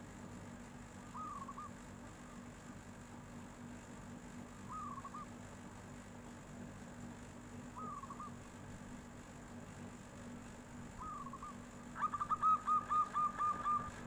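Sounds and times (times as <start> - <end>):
dove cooing: 1.2 - 1.8, 11.0 - 14.0.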